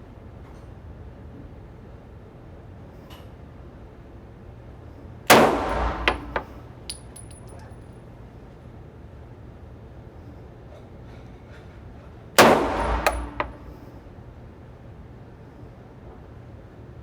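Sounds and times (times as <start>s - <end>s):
gunshot: 5.3s - 6.5s, 12.4s - 13.7s.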